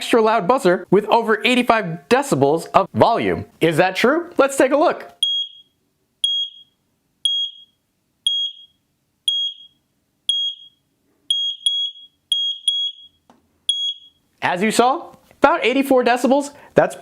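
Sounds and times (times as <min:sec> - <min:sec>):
smoke alarm high-pitched beeps: 0:05.2 - 0:14.2.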